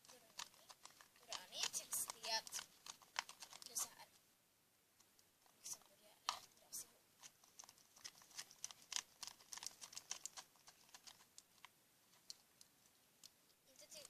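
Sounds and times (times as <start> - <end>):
slime clicking and ticking: 0.0 - 4.0, 7.2 - 13.4.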